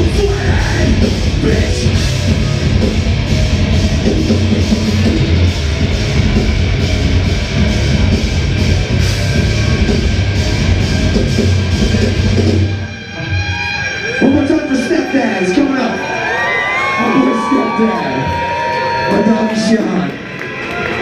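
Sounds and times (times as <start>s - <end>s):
live rock band playing: 0.0s - 20.9s.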